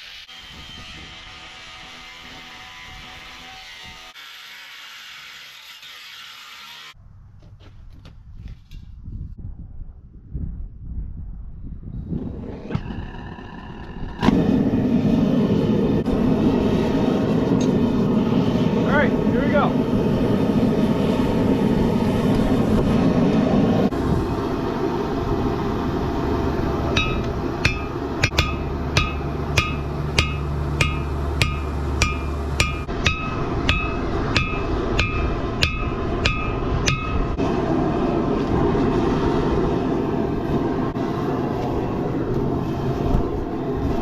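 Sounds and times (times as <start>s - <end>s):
steady rushing noise: 12.3s - 44.0s
hammer striking steel on anvil: 27.0s - 37.4s.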